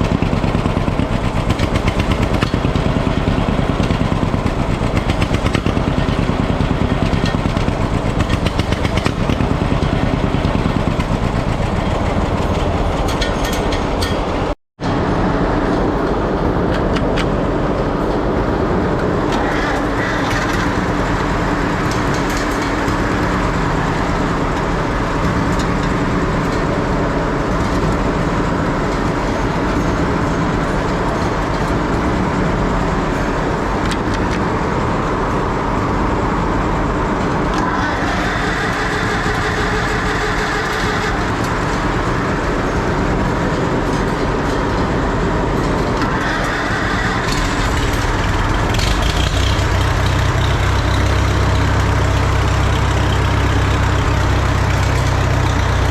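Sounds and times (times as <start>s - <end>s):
tractor engine running: 0.0s - 55.9s.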